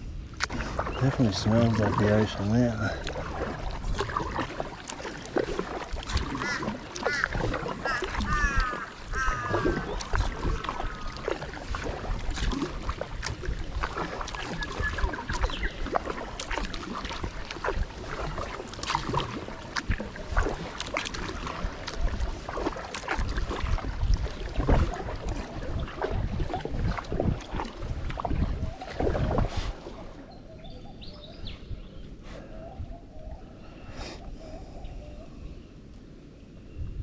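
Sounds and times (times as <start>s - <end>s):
wind rumble on microphone: 0.0s - 37.0s
paddle strokes splashing: 0.1s - 35.6s
bird calling: 6.4s - 11.3s.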